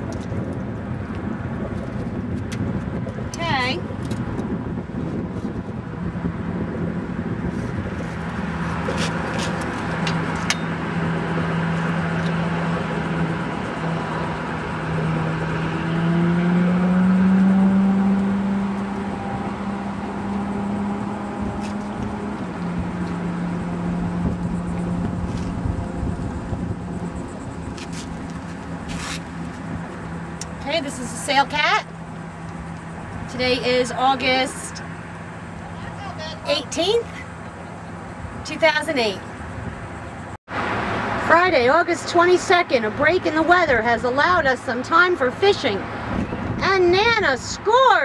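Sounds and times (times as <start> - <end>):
motor engine humming: 0.0 - 47.4.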